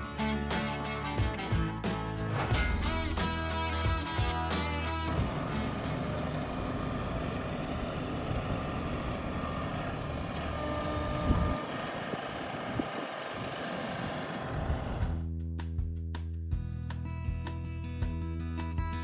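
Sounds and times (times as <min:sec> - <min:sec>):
engine running: 0:02.3 - 0:15.2.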